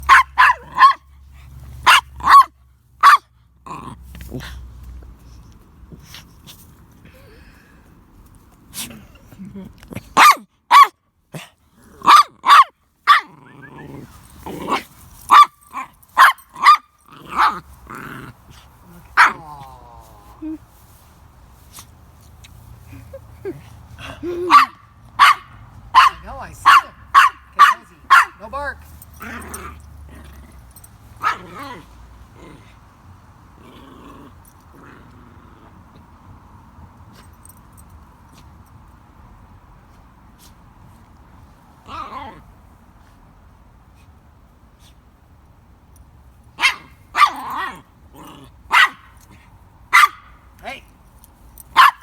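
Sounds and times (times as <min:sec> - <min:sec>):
dog barking: 0:00.0 - 0:01.0, 0:01.8 - 0:03.3, 0:10.2 - 0:11.0, 0:12.0 - 0:13.3, 0:15.3 - 0:17.6, 0:24.5 - 0:28.4, 0:31.2 - 0:31.6, 0:46.6 - 0:47.8, 0:48.7 - 0:49.1, 0:49.9 - 0:50.4, 0:51.7 - 0:52.0
dog growling: 0:17.1 - 0:20.5, 0:29.2 - 0:30.6, 0:33.6 - 0:35.8.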